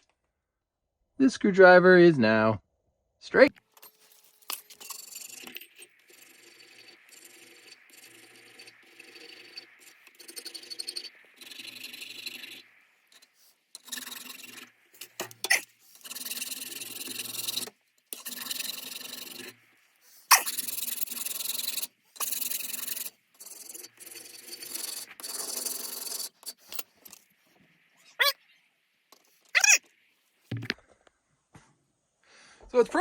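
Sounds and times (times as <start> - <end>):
file rasping on steel: 4.7 - 27.2
short squeal: 20.3 - 21.2, 29.6 - 29.8.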